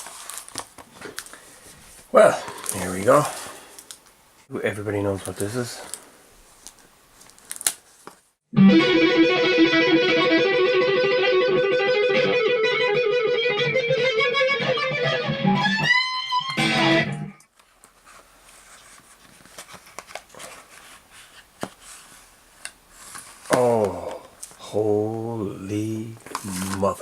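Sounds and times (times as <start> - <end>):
faint clicks and handling noise: 0.0 - 8.2, 17.4 - 21.9
guitar music: 8.5 - 17.4.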